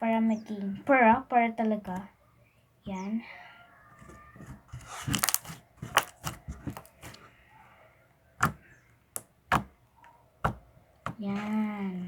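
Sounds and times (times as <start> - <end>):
slime popping and crackling: 4.8 - 7.2.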